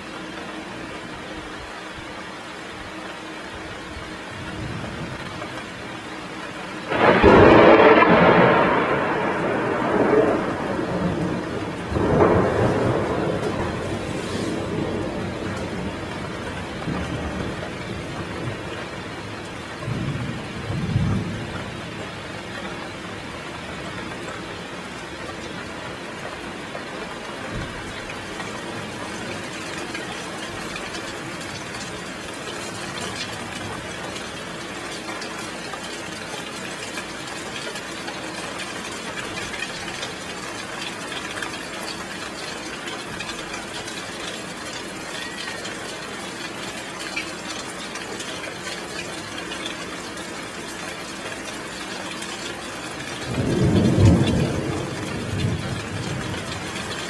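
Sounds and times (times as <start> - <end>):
heavy rain falling: 0.0 - 57.0
thunder rumbling: 6.9 - 24.2, 53.0 - 57.0.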